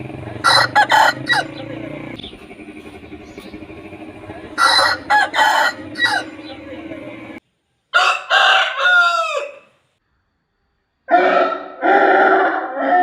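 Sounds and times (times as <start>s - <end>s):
slowed rooster crowing: 0.4s - 1.8s, 4.4s - 7.3s, 7.9s - 9.8s, 11.1s - 13.0s.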